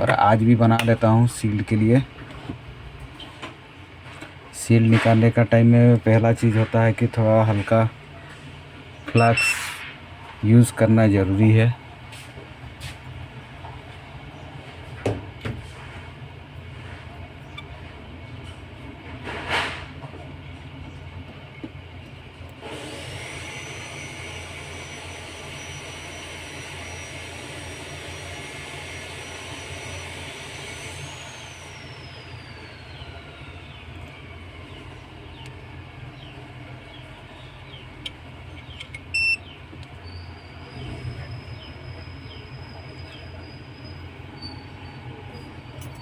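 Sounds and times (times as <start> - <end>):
short electronic beep: 9.2 - 9.8, 39.1 - 39.5
hot air blower whine: 22.6 - 37.8.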